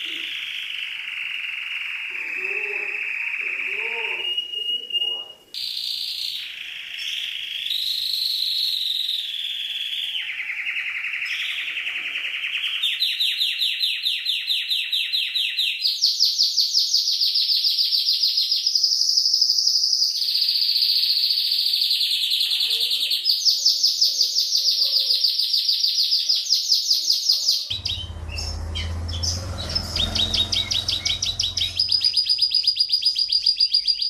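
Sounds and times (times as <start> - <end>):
canary singing: 27.7 - 34.0.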